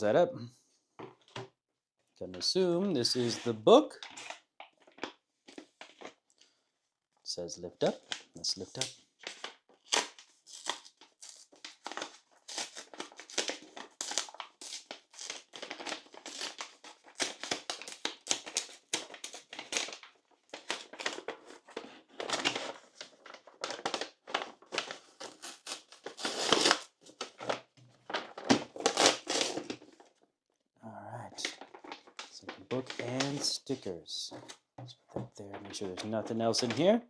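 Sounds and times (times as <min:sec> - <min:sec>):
packaging crinkling and rustling: 0:04.0 - 0:06.2, 0:08.0 - 0:30.1, 0:31.4 - 0:34.6, 0:35.4 - 0:37.0.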